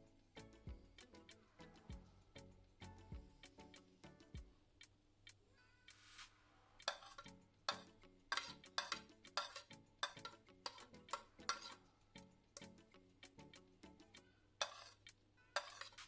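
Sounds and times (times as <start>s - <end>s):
utensil scraping and clinking dish: 6.8s - 11.9s, 14.6s - 16.0s.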